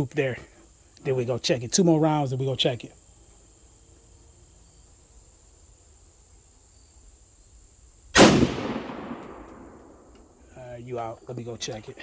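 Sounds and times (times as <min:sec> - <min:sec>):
high insect buzz: 0:00.0 - 0:10.8
rifle shot with echo: 0:08.2 - 0:10.4.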